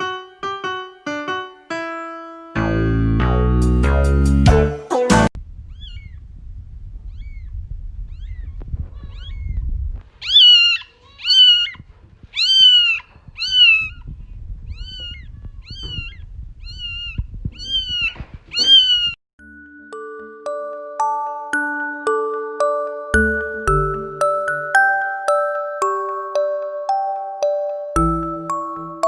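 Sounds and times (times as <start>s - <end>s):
kitten meowing: 5.7s - 6.2s, 7.0s - 19.2s
bell-like background music: 19.4s - 29.0s.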